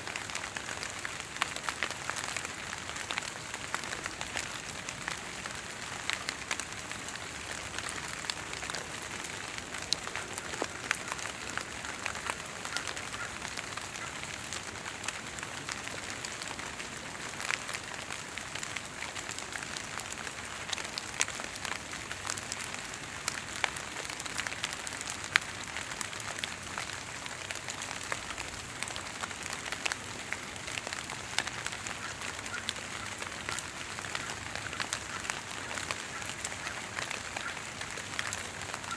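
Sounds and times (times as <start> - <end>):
water drips on foliage: 0.0 - 38.9.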